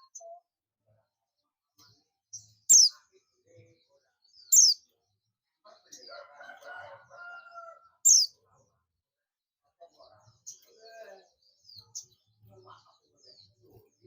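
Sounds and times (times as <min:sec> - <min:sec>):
bird high chirps: 0:02.4 - 0:03.0, 0:04.4 - 0:04.9, 0:08.0 - 0:08.3.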